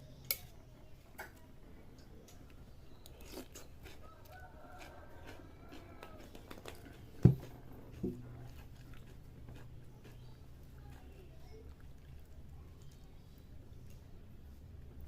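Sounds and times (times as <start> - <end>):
distant rooster crowing: 4.0 - 6.4.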